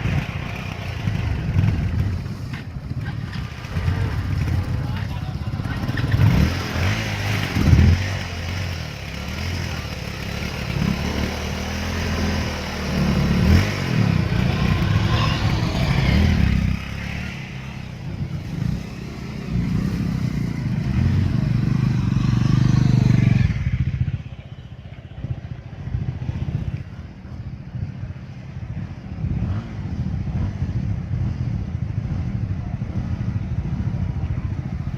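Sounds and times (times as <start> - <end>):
motorcycle engine revving: 5.5 - 24.5, 28.6 - 34.9.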